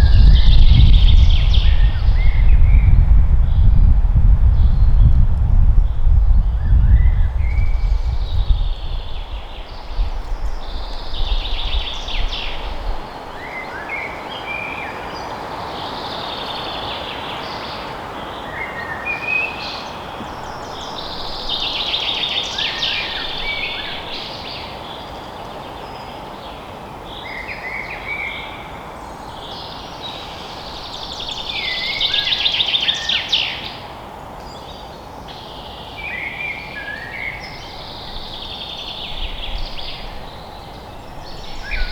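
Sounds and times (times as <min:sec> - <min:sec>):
low rumble: 0:00.0 - 0:12.3
songbirds singing: 0:00.0 - 0:41.9.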